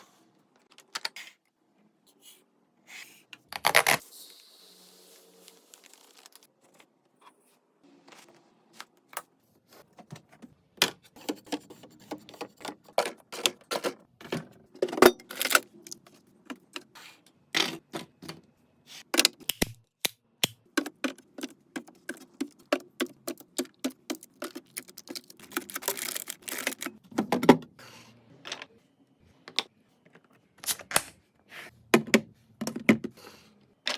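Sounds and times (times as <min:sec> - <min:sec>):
containers clicking and knocking: 0:20.7 - 0:27.5.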